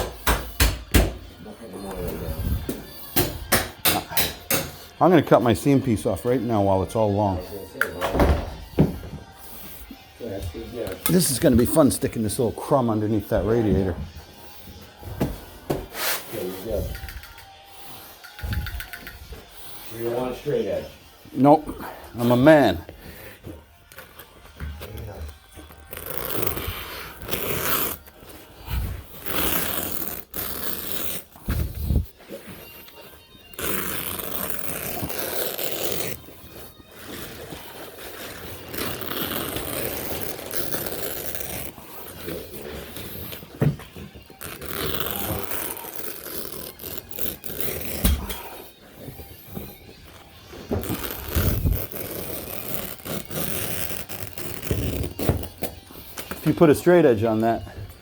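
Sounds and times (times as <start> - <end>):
scraping and rubbing: 10.4 - 20.8, 24.0 - 57.5
knife rasping through carpet: 25.7 - 56.4.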